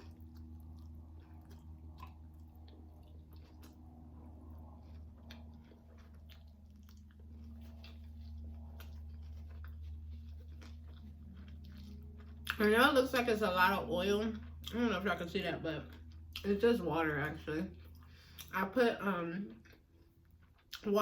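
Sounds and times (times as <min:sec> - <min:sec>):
chewing with mouth clicks: 0:00.0 - 0:18.6, 0:19.5 - 0:21.0
steady low hum: 0:00.0 - 0:21.0.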